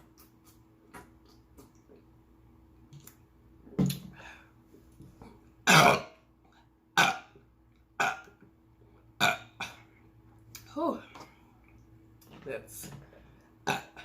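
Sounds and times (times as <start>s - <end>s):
person burping: 5.6s - 6.2s, 7.0s - 7.4s, 8.0s - 8.3s, 9.2s - 9.9s, 13.6s - 14.0s.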